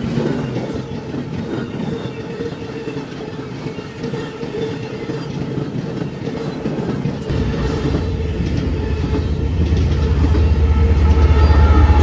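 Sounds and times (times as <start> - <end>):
train wheels rumbling on rails: 0.0 - 12.0.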